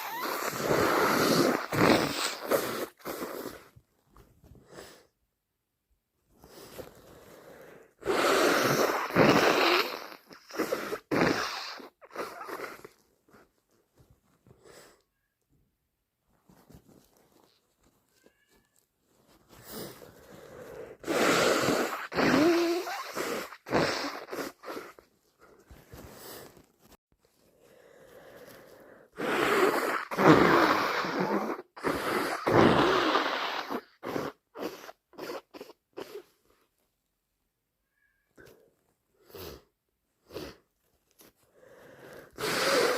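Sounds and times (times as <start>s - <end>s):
person blowing nose: 0.0s - 3.8s, 6.4s - 13.5s, 19.3s - 26.9s, 28.2s - 36.6s, 39.2s - 40.7s, 41.3s - 42.9s
short sniffs: 0.0s - 3.8s, 6.4s - 13.5s, 19.3s - 26.6s, 28.1s - 36.5s, 39.2s - 42.9s.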